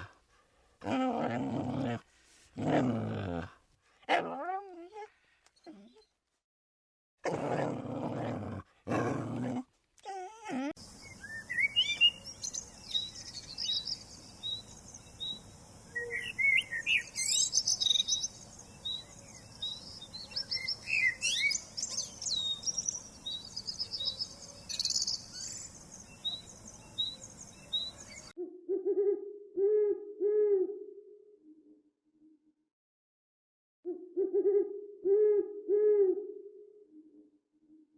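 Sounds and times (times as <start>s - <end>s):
songbirds chirping and trilling: 10.8s - 28.4s.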